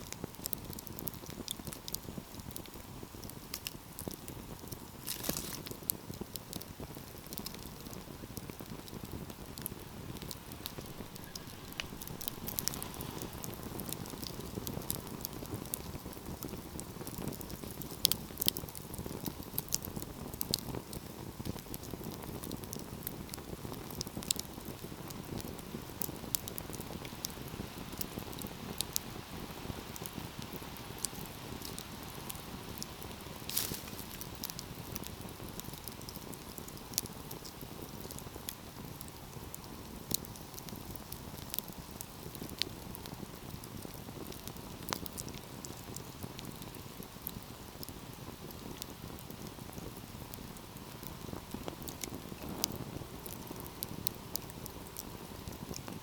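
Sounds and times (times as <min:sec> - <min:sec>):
wood fire crackling and popping: 0:00.0 - 0:56.0
low rush of burning: 0:03.2 - 0:20.6, 0:23.8 - 0:45.4.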